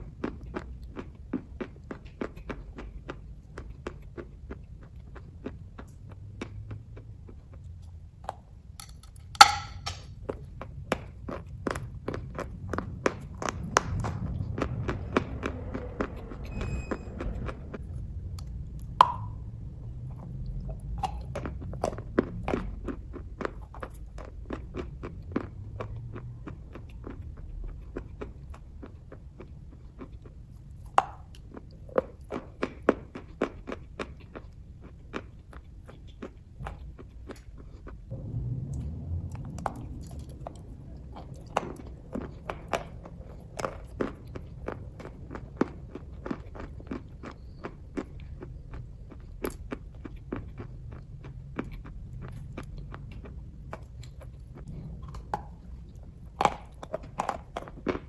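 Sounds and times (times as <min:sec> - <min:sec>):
person chewing with mouth clicks: 0:00.0 - 0:58.0.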